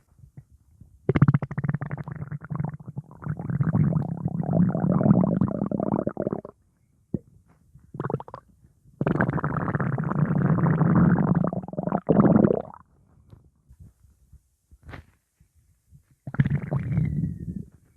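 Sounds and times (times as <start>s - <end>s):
stomach growling: 1.1s - 6.6s, 7.9s - 12.9s, 16.2s - 17.8s.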